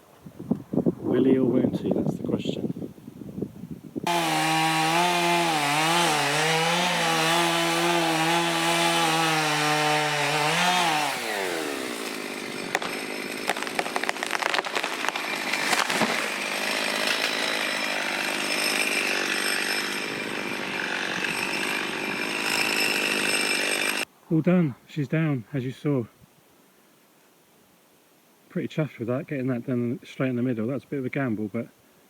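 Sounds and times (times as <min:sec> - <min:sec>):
chainsaw cutting wood: 0:04.0 - 0:24.1
tree trunk cracking and falling: 0:04.2 - 0:17.7.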